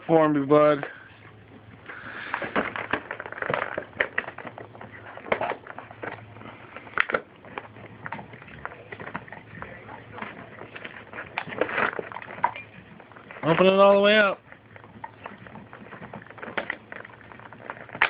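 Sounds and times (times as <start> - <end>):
dog chewing packaging: 0.9 - 18.0.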